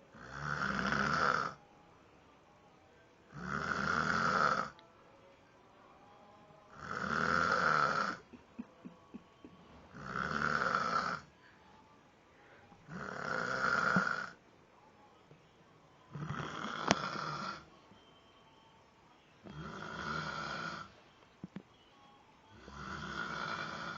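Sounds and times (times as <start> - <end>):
rough rasping snores: 0.1 - 1.6, 3.3 - 4.8, 6.7 - 8.2, 9.9 - 11.3, 12.8 - 14.4, 16.1 - 17.7, 19.5 - 20.9, 22.6 - 23.9.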